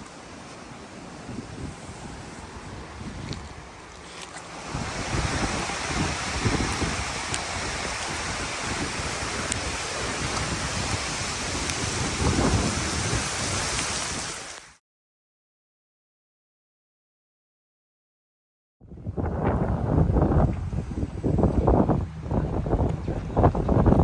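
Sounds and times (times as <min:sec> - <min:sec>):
heavy rain pouring: 0:00.0 - 0:14.8
gusting wind rumbling: 0:00.9 - 0:03.9, 0:04.5 - 0:14.4, 0:18.8 - 0:24.0.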